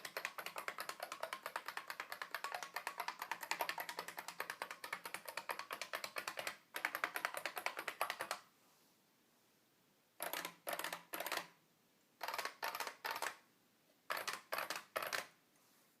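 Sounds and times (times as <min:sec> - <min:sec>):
keyboard typing: 0:00.0 - 0:08.4, 0:10.2 - 0:11.6, 0:12.2 - 0:13.4, 0:14.1 - 0:15.3.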